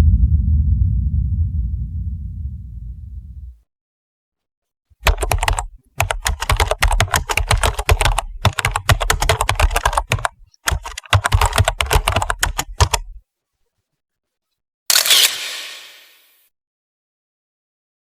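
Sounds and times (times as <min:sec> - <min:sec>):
fast typing on keyboard: 0:05.0 - 0:13.2.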